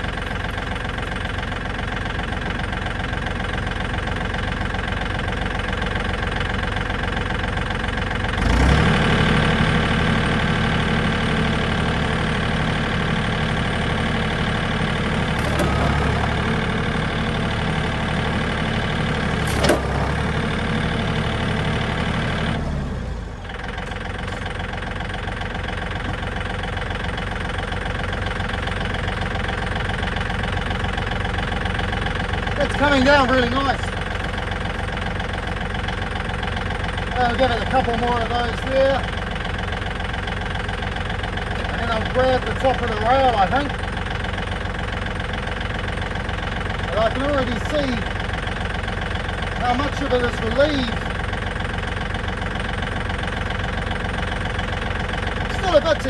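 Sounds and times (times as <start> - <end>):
tractor engine idling and revving: 0.0 - 56.0
sharp cracks from strained chassis: 19.4 - 20.1.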